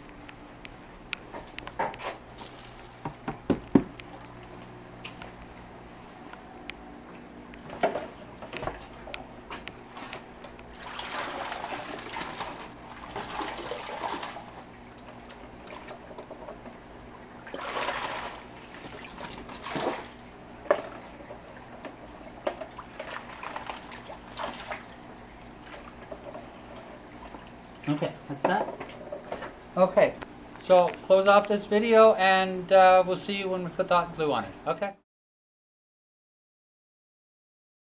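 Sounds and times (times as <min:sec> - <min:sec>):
steady low hum: 0:00.0 - 0:35.0
water splashing in tank: 0:10.7 - 0:16.3, 0:17.3 - 0:27.9.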